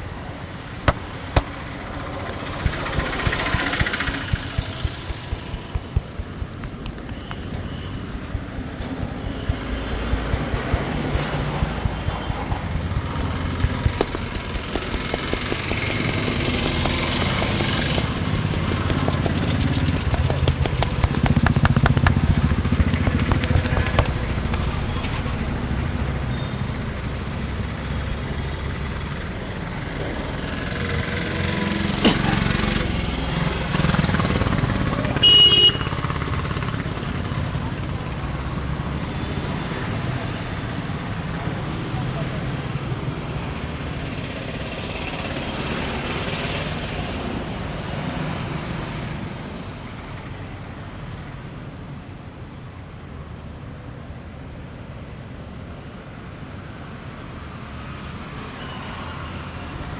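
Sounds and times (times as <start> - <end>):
motorcycle engines rumbling: 0.0 - 49.4
street traffic: 0.0 - 59.9
quick light taps: 0.9 - 24.8.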